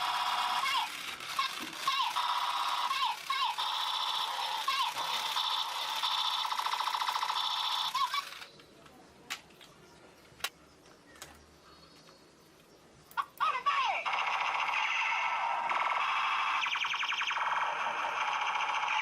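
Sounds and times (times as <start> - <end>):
electronic toy gun buzzing: 0.0 - 8.5, 14.0 - 19.0
sharp plastic clicks: 0.4 - 11.4.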